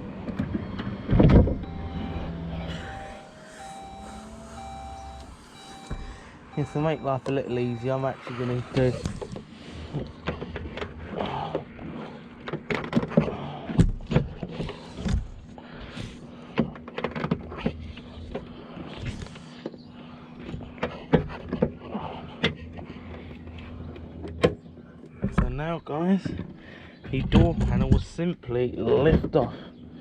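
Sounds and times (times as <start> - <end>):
steady low hum: 0.0 - 12.4.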